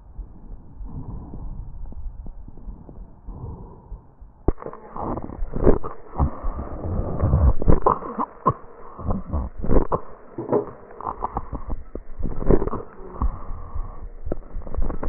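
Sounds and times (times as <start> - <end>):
breathing through stethoscope: 3.3 - 15.0.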